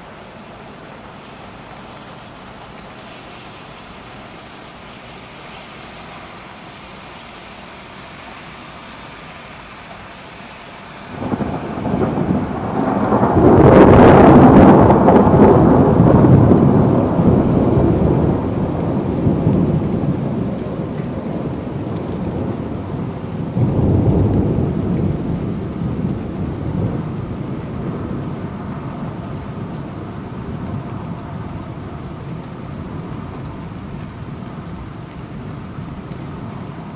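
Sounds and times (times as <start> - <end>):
rain hiss: 0.0 - 36.9
thunder rumbling: 11.0 - 36.9.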